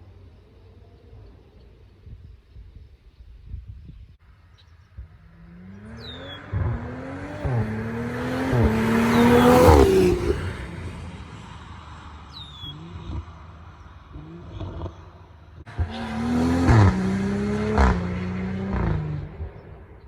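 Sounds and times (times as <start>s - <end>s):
car engine accelerating past: 5.2s - 20.0s.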